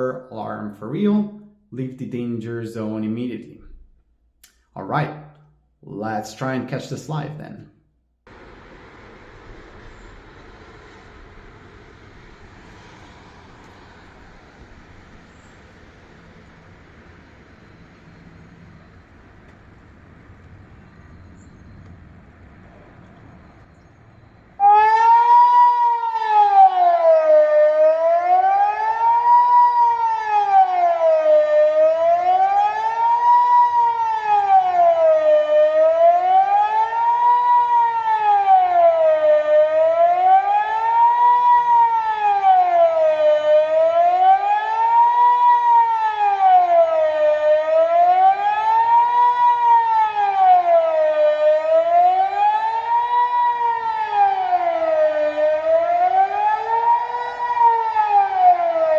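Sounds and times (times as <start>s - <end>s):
fainter lower siren tone: 8.3s - 58.9s
siren wailing: 20.0s - 58.9s.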